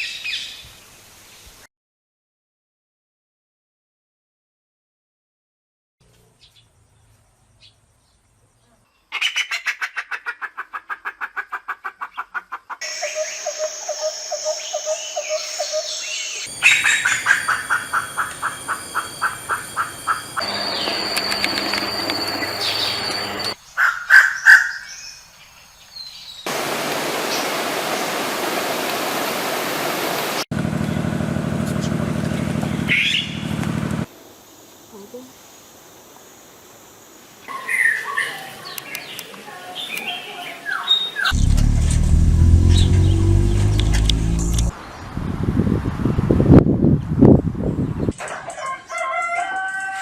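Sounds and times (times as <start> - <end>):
pheasant calls: 9.1 - 24.9.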